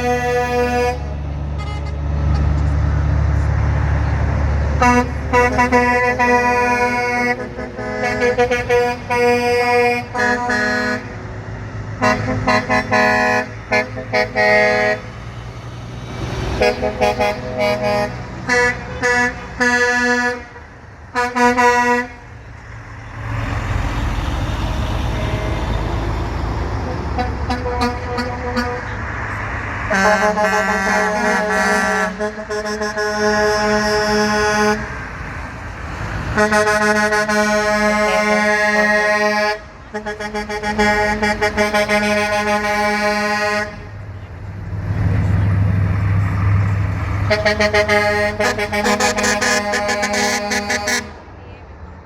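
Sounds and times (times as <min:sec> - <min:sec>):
truck horn blasts: 0:00.0 - 0:02.6, 0:04.8 - 0:15.3, 0:16.5 - 0:22.4, 0:25.0 - 0:26.2, 0:26.8 - 0:29.1, 0:29.9 - 0:35.2, 0:36.2 - 0:44.2, 0:47.1 - 0:51.3
truck engine rumble: 0:00.0 - 0:52.0.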